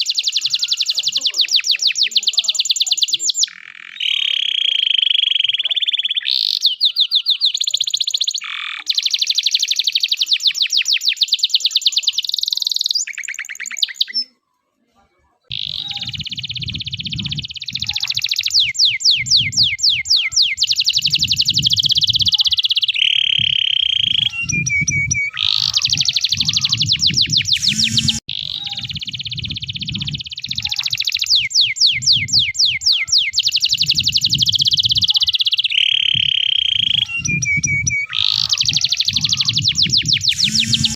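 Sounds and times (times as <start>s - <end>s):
canary singing trills: 0.0s - 14.4s, 15.5s - 40.9s
low pulsing rumble: 16.1s - 17.5s, 28.8s - 30.7s, 39.2s - 40.9s.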